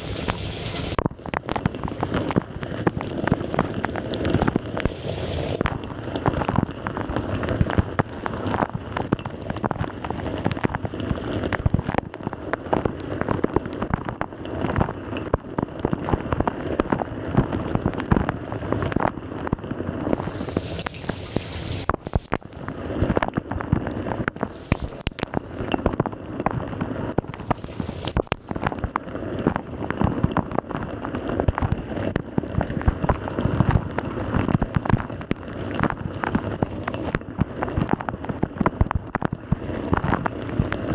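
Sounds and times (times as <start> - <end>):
higher hiss: 0.0 - 1.0, 4.9 - 5.6, 20.2 - 23.1, 27.3 - 28.7.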